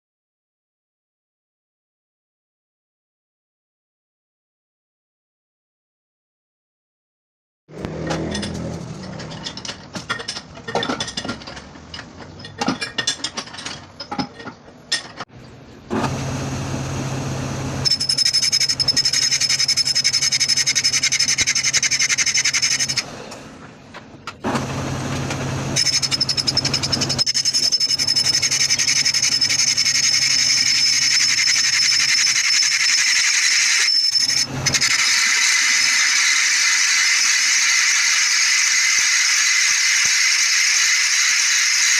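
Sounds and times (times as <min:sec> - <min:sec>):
metal parts clattering: 0:08.1 - 0:15.2
machine tool motor humming: 0:17.0 - 0:23.0, 0:24.5 - 0:41.9
high-pitched squeal: 0:17.8 - 0:23.1, 0:25.8 - 0:41.9.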